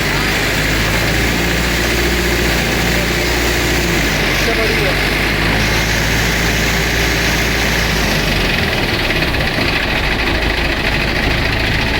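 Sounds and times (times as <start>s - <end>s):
mixer machine drone: 0.0s - 11.9s.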